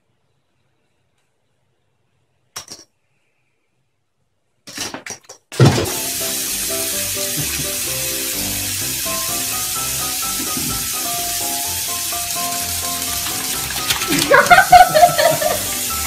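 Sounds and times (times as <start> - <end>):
background music: 5.8 - 16.0
steady hiss: 5.9 - 16.0.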